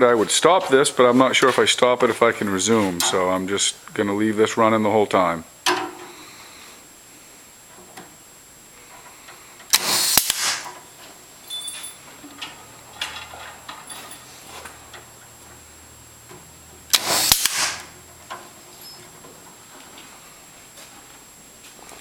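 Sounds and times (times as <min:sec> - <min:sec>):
clip gun firing with sharp snap: 0:09.7 - 0:10.7, 0:16.9 - 0:17.9.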